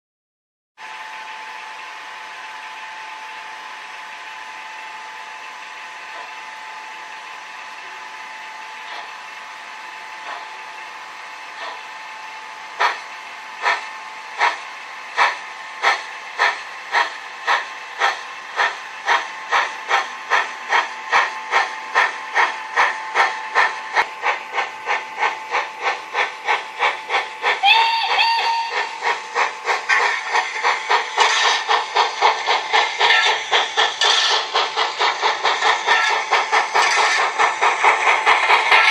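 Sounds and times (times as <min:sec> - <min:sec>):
steam locomotive chuffing: 0:00.8 - 0:38.9
steam hiss: 0:12.8 - 0:38.9.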